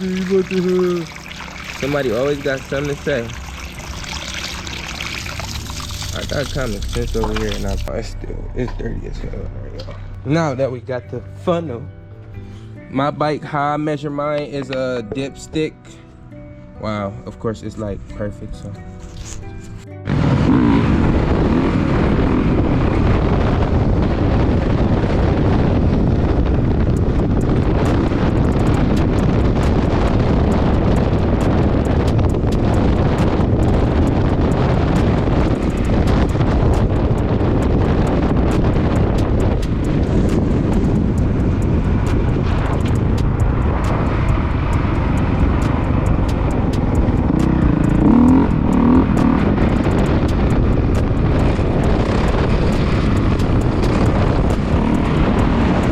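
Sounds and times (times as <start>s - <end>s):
dirt bike engine running: 0.0s - 7.9s, 20.0s - 55.9s
wind buffeting microphone: 20.2s - 55.9s.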